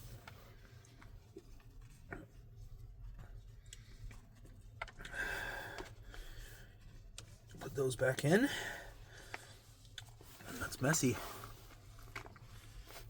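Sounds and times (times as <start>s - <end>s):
low steady room hum: 0.0s - 13.0s
soft scraping rustle: 9.3s - 13.0s.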